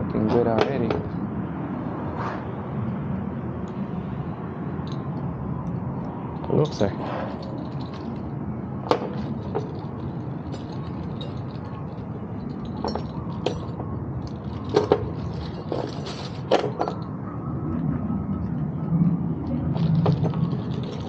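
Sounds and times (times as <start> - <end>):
clicks of tools and bike parts: 12.7 - 17.1.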